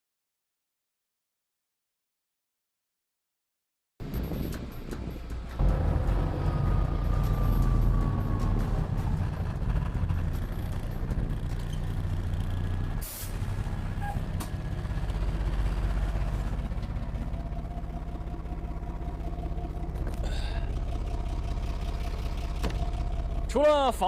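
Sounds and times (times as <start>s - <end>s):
truck engine rumbling: 4.0s - 24.0s
air brake hiss: 13.0s - 13.4s.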